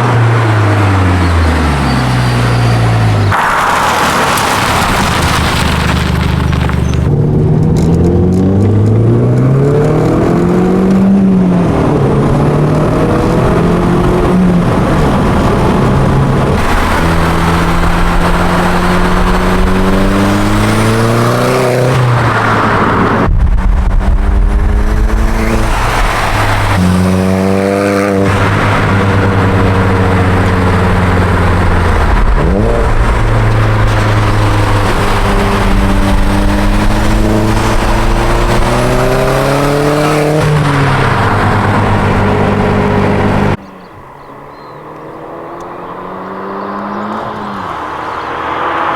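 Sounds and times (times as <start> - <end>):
car engine accelerating through gears: 7.1 - 48.9.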